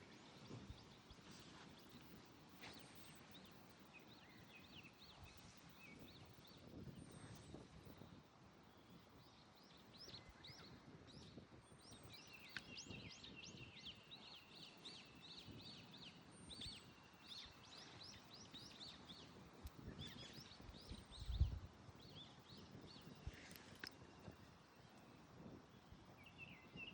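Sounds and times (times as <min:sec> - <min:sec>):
small birds chirping: 0:00.0 - 0:26.9
wind buffeting microphone: 0:00.0 - 0:26.9.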